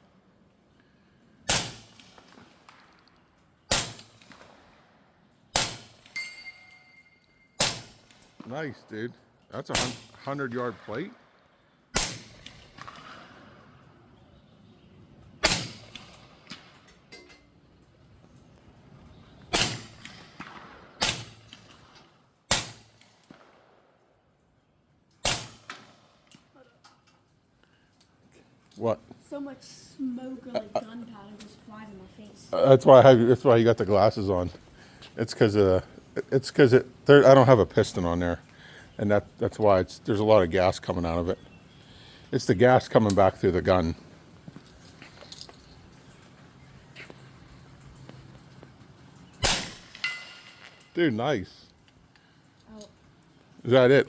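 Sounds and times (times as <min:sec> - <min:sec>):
suppressed rifle shots: 0:01.5 - 0:02.9, 0:03.7 - 0:04.6, 0:05.6 - 0:06.2, 0:07.6 - 0:08.3, 0:12.0 - 0:13.2, 0:15.4 - 0:16.1, 0:19.5 - 0:21.7, 0:22.5 - 0:23.6, 0:25.2 - 0:26.0, 0:49.4 - 0:50.5
steel target ringing: 0:05.6 - 0:07.9, 0:49.4 - 0:51.0.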